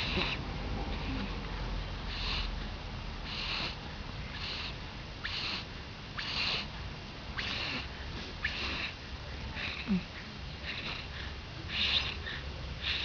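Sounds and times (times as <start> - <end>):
cat snoring: 0.0 - 0.4, 2.1 - 2.5, 3.2 - 3.8, 4.4 - 6.7, 7.4 - 8.9, 9.6 - 10.0, 10.6 - 11.1, 11.7 - 12.2.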